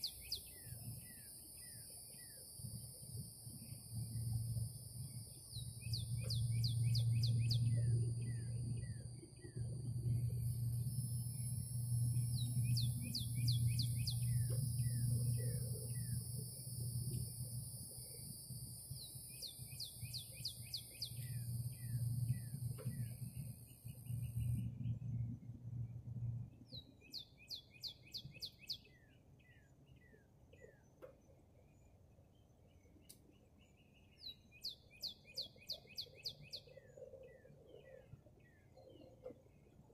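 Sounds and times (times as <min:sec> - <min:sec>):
steady low hum: 0:00.0 - 0:27.6
small birds chirping: 0:05.0 - 0:09.0, 0:10.8 - 0:16.4, 0:19.0 - 0:25.2, 0:32.8 - 0:39.7.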